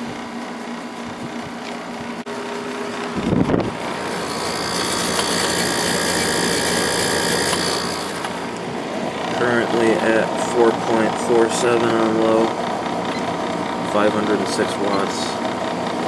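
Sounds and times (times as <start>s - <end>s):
air conditioner hum and whoosh: 0.0s - 16.0s
high whine: 0.0s - 16.0s.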